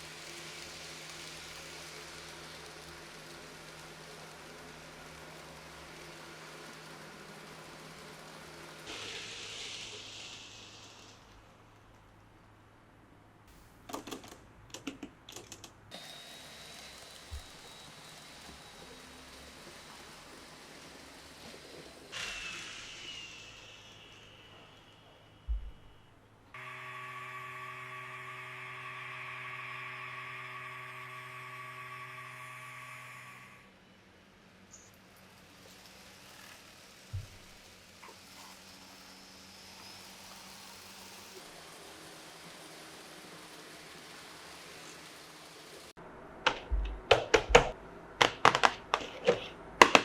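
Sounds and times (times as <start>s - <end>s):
model train motor humming: 0.0s - 12.0s, 15.9s - 45.9s
steady low hiss: 11.2s - 15.2s
sharp clicks and taps: 13.9s - 15.8s, 46.5s - 50.0s.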